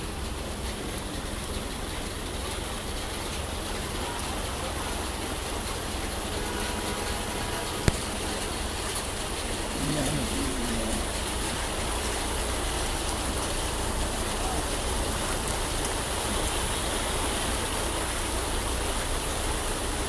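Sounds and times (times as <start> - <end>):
traffic on a wet street: 0.0 - 20.0
person's voice: 9.6 - 11.8.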